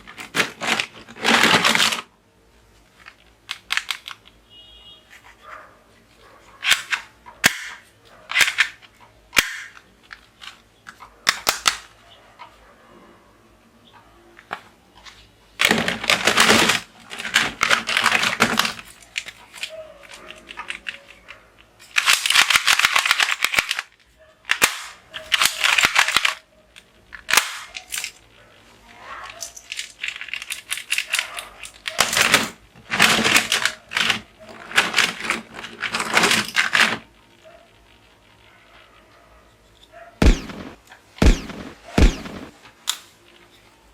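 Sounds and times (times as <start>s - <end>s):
toy guns firing: 6.6s - 9.9s, 11.2s - 11.9s, 21.9s - 23.9s, 24.5s - 26.4s, 27.2s - 28.2s, 40.2s - 43.0s.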